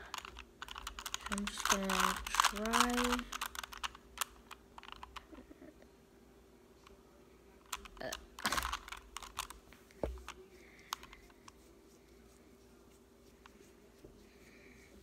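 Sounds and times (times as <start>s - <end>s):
puzzle cube clicking: 0.0s - 5.4s, 7.7s - 9.6s.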